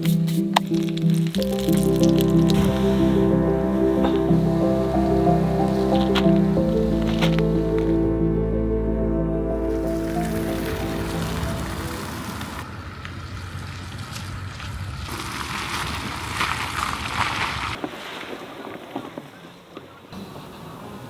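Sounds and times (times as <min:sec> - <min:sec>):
music: 0:00.0 - 0:12.6.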